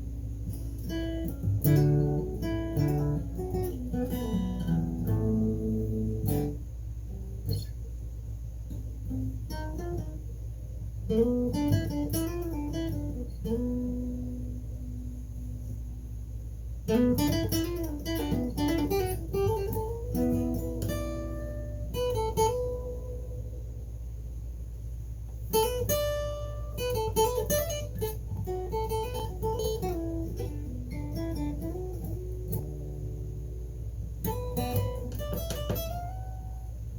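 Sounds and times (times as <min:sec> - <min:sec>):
guitar lead with bent notes: 0:00.0 - 0:07.7, 0:25.5 - 0:36.7.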